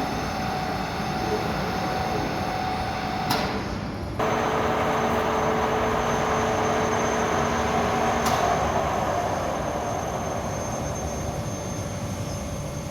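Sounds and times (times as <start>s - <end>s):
lower hum: 4.2s - 12.9s
milling machine whining: 4.2s - 12.9s.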